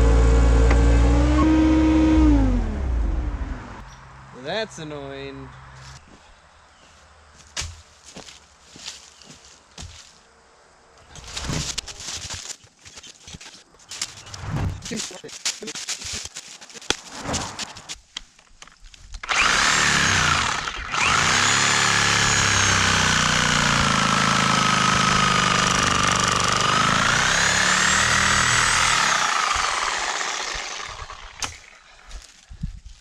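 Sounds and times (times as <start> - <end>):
power saw cutting wood: 0.0 - 3.0, 19.2 - 32.0.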